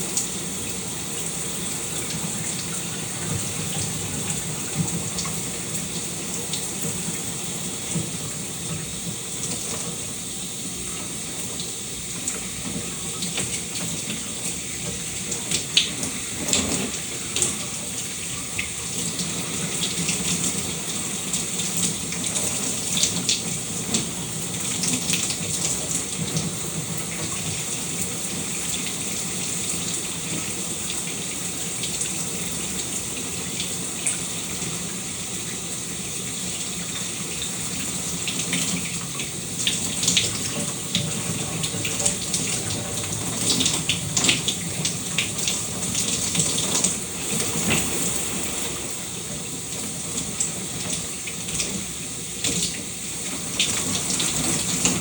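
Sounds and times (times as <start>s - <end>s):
shower running: 0.0s - 55.0s
water splashes and drips: 0.0s - 55.0s.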